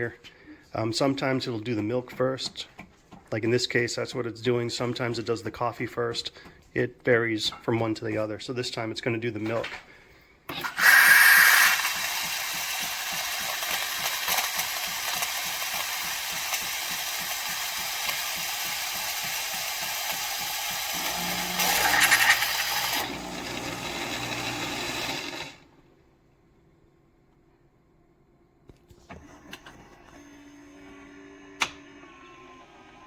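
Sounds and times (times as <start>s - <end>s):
pump pulsing: 10.6s - 25.4s
espresso machine steaming milk: 10.6s - 25.6s.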